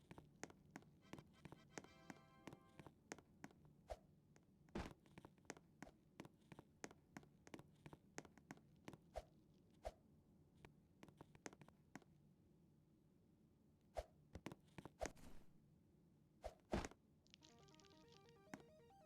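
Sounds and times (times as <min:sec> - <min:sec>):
faint clicks and taps: 0:05.1 - 0:09.0.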